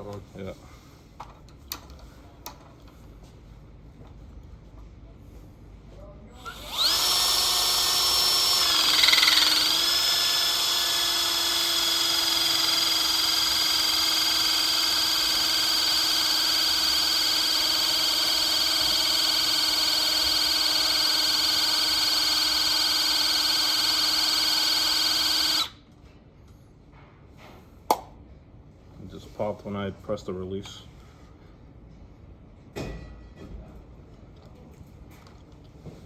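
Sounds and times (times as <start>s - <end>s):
crimping tool motor whine: 6.4s - 25.8s.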